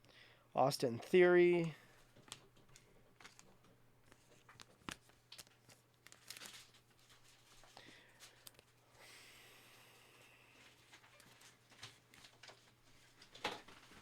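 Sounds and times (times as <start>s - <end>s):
trading cards clicking and rustling: 1.0s - 8.8s.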